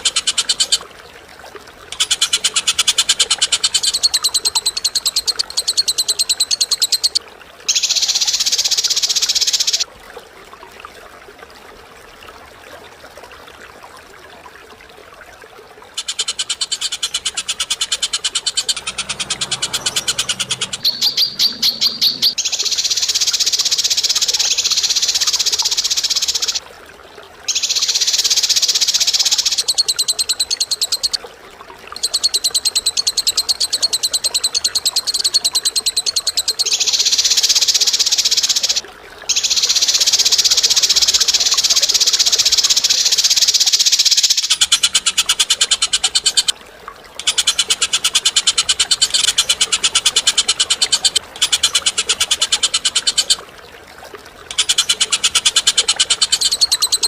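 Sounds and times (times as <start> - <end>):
rattling bird trills: 1.9 - 9.8, 16.0 - 25.0, 47.2 - 53.4, 54.5 - 57.0.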